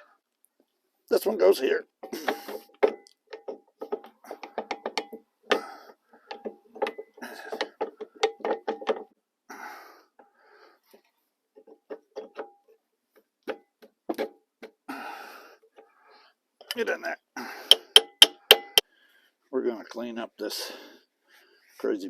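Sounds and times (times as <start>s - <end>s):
metal clicking and knocking: 2.0s - 9.2s, 11.6s - 12.8s, 17.7s - 18.8s.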